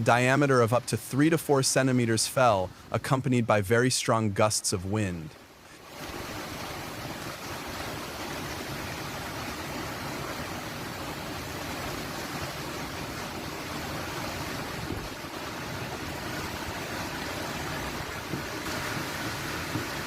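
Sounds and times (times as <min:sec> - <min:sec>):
heavy rain and hail: 0:05.6 - 0:20.0.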